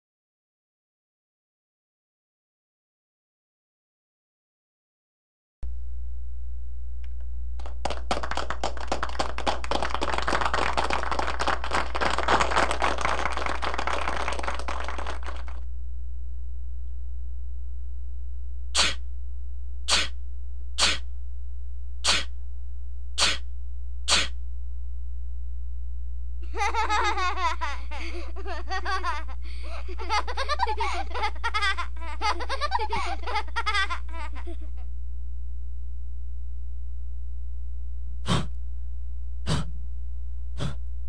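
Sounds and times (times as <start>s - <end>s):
dense crackling noise: 7.1s - 15.7s
short sharp bursts: 18.8s - 19.0s, 19.9s - 20.2s, 20.8s - 21.1s, 22.0s - 22.3s, 23.2s - 23.5s, 24.1s - 24.4s.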